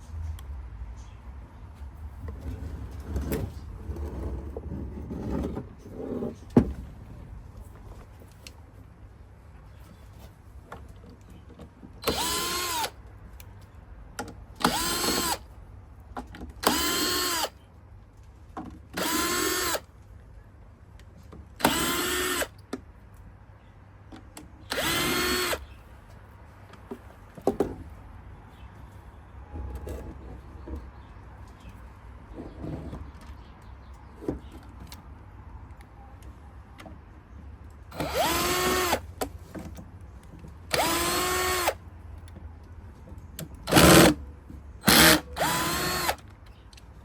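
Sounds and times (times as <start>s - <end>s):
power drill whining: 12.0s - 12.9s, 14.6s - 15.4s, 16.6s - 17.5s, 19.0s - 19.8s, 21.6s - 22.5s, 24.7s - 25.6s, 37.9s - 39.0s, 40.7s - 41.8s, 43.7s - 44.2s, 44.8s - 46.2s.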